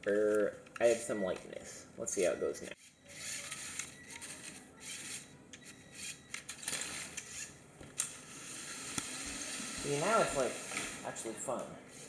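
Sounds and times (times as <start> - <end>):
toy car motors whirring: 2.8 - 11.3.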